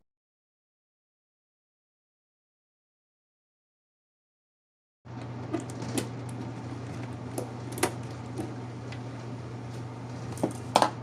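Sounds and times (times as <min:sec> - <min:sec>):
steady low hum: 0:05.1 - 0:11.0.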